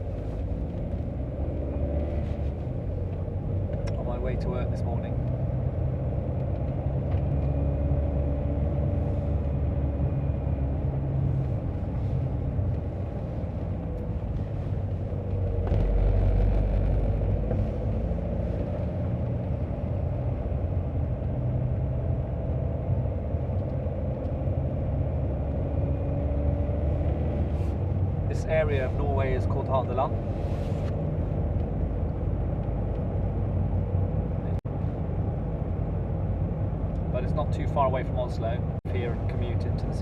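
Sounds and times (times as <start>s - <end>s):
car road rumble and engine drone: 0.0s - 40.0s.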